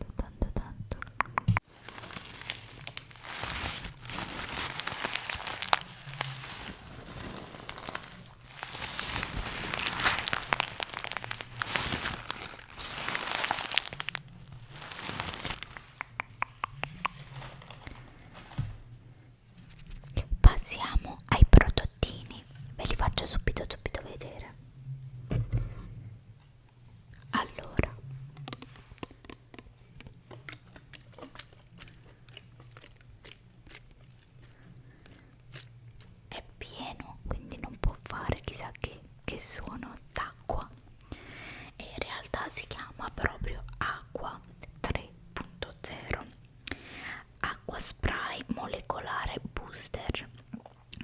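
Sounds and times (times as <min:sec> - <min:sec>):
close-up clicks and crackles: 0:00.9 - 0:06.8, 0:07.7 - 0:18.0
packaging crinkling and tearing: 0:01.6 - 0:18.9.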